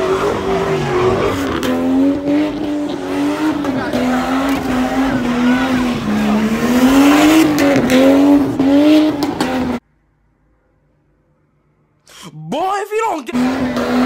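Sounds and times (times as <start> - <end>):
car engine at high revs: 0.0 - 9.8, 13.3 - 14.0
tire squeal: 0.0 - 9.8.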